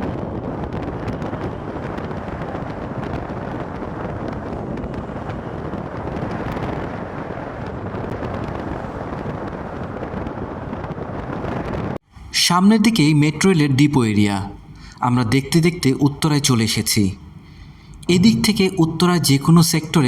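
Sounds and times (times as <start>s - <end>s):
wind on microphone: 0.0s - 12.3s
road noise: 0.0s - 20.0s.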